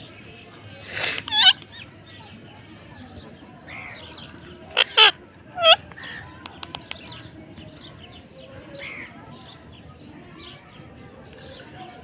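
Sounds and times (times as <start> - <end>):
quick clicks: 0.9 - 1.7, 6.4 - 7.2
parrot squawking: 1.0 - 1.6, 4.7 - 5.8.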